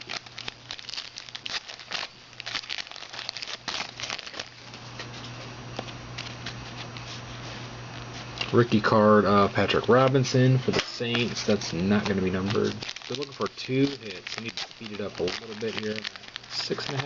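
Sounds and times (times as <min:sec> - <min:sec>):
foil wrapper crinkling: 0:00.0 - 0:05.2, 0:09.5 - 0:17.0
low steady hum: 0:00.0 - 0:17.0.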